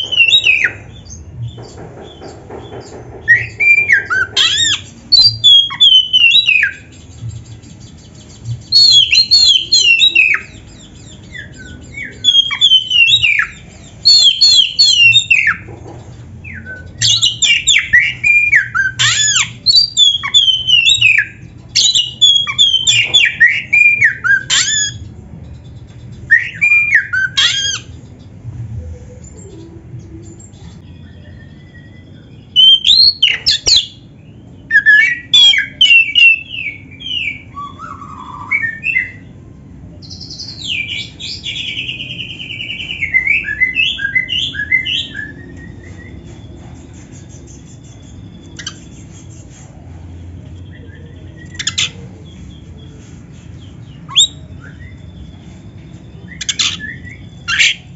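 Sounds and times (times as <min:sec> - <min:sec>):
bird singing whistled phrases: 0:03.3 - 0:07.2, 0:08.7 - 0:15.6, 0:34.6 - 0:39.3, 0:54.0 - 0:55.3.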